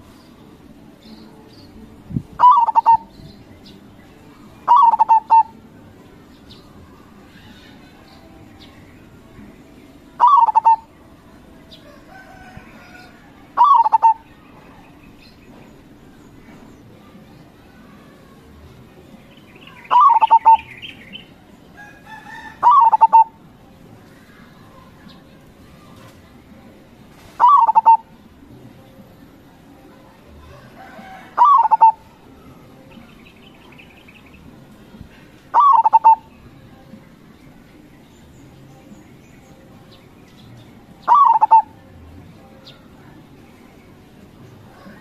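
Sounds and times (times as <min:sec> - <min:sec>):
small birds chirping: 0:00.0 - 0:23.4, 0:31.4 - 0:45.0
dove cooing: 0:02.4 - 0:03.1, 0:04.6 - 0:05.6, 0:10.2 - 0:10.9, 0:12.8 - 0:14.2, 0:19.9 - 0:20.8, 0:22.3 - 0:23.4, 0:27.3 - 0:28.1, 0:30.5 - 0:32.1, 0:35.5 - 0:36.3, 0:41.0 - 0:41.8.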